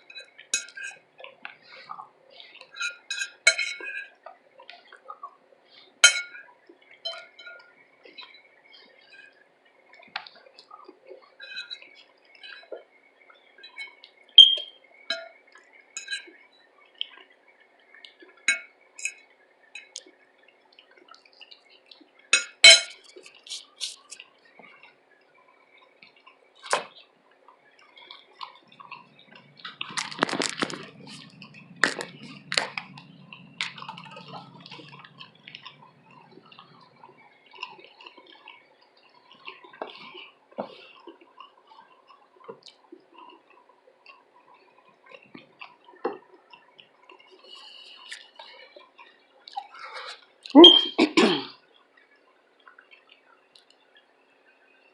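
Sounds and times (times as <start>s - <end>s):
utensil clinking against dish: 0.1s - 1.0s, 2.7s - 4.1s, 6.0s - 6.4s, 16.0s - 16.2s, 22.4s - 23.1s
steady noise: 28.6s - 37.4s.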